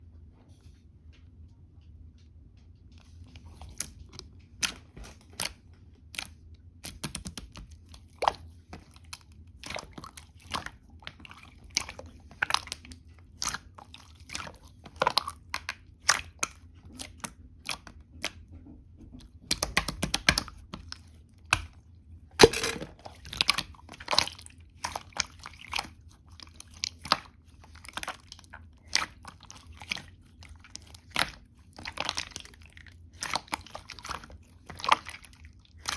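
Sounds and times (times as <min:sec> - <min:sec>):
slime squishing with sticky clicks: 0:03.0 - 0:35.9
air bubbles popping: 0:22.4 - 0:23.0.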